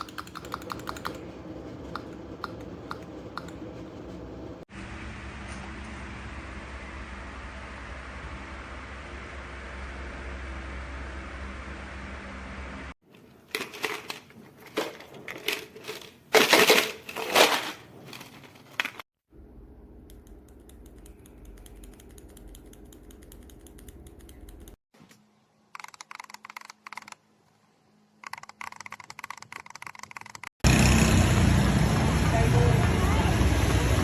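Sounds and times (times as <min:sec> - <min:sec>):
mechanical keyboard typing: 0:00.0 - 0:01.2, 0:20.2 - 0:24.8, 0:25.7 - 0:27.2, 0:28.2 - 0:30.6.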